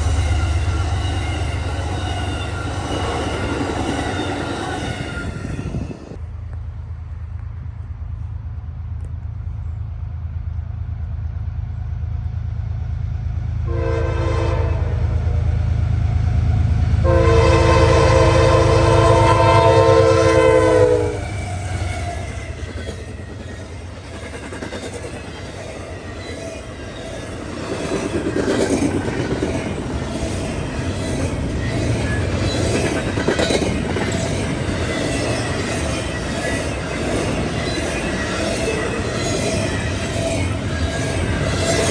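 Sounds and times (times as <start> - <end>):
locomotive engine rumble: 0.0 - 41.9
train horn blasts: 13.6 - 22.4.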